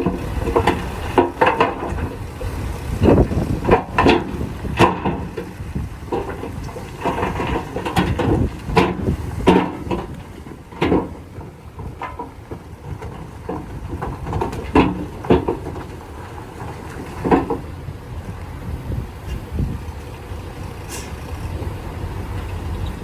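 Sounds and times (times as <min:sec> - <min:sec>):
metal clanks and knocks: 0:00.0 - 0:18.4
heavy machinery rumbling: 0:00.0 - 0:23.0.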